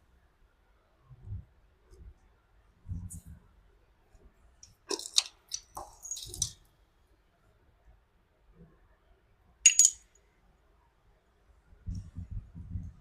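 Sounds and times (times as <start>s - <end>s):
small clicks and light knocks: 4.6s - 6.6s
sharp metallic clink: 9.7s - 10.1s.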